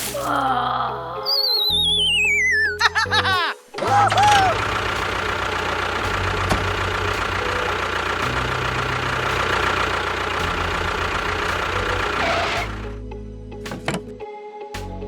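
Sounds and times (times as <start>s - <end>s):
small motor running: 4.5s - 12.9s.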